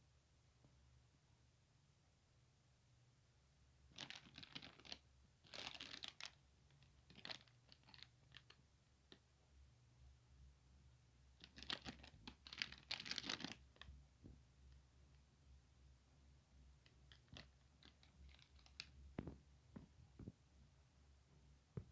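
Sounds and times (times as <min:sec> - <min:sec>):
packaging crinkling and tearing: 0:04.0 - 0:06.4, 0:07.0 - 0:08.6, 0:11.4 - 0:13.8, 0:17.1 - 0:18.9.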